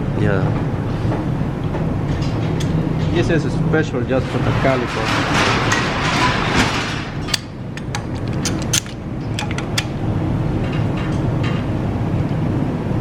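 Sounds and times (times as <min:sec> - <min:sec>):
metallic tool clicks and clinks: 0:07.3 - 0:09.9.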